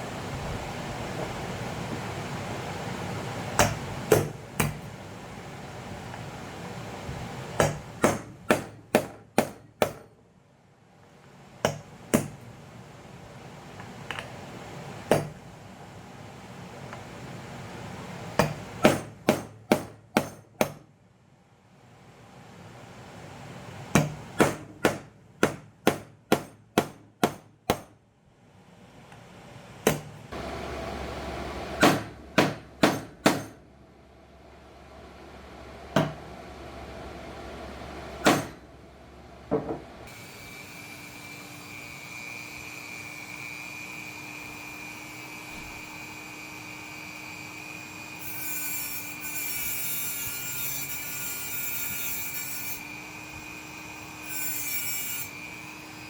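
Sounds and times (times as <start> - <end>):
hammer striking a punch: 3.6 - 4.9, 7.6 - 10.1, 11.6 - 12.4, 15.1 - 15.4, 18.4 - 20.9, 23.9 - 28.0, 29.8 - 30.1, 31.8 - 33.6, 36.0 - 36.2, 38.2 - 38.6
hum with high whine: 29.0 - 32.8.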